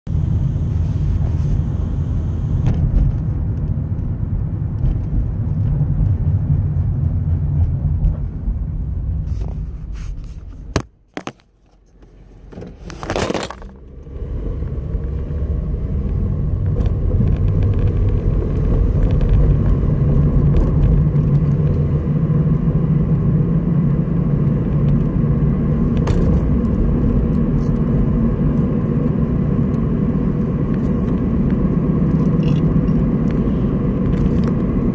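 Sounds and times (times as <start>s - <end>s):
car engine humming: 0.1s - 11.4s, 12.0s - 34.9s.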